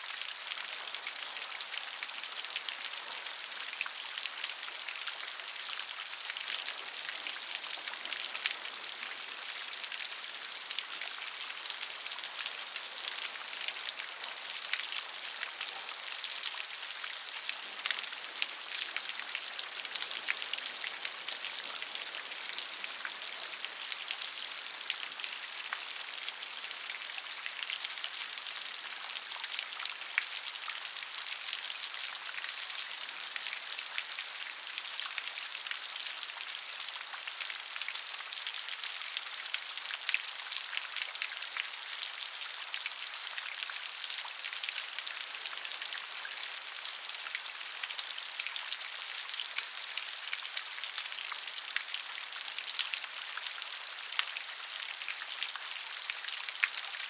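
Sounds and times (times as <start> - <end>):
steady rain hiss: 0.0 - 41.8.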